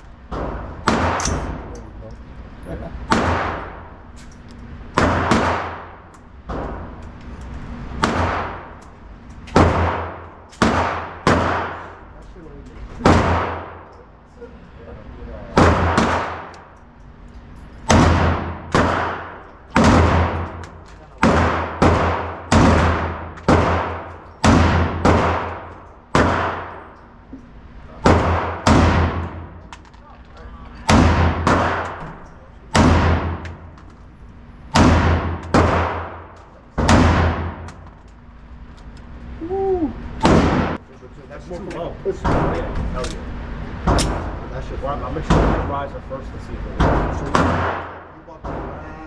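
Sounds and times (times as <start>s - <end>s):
gunshots: 0.3s - 1.7s, 3.1s - 3.9s, 4.9s - 6.9s, 7.9s - 8.8s, 9.6s - 12.0s, 13.0s - 13.9s, 15.5s - 16.6s, 17.9s - 26.9s, 28.0s - 29.7s, 30.8s - 33.8s, 34.7s - 37.8s, 40.2s - 40.8s, 46.8s - 48.8s.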